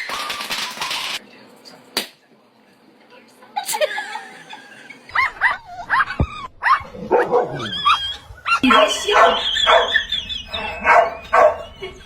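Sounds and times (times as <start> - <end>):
dog yipping: 5.2 - 12.0
dog barking: 6.6 - 8.0, 8.6 - 11.8.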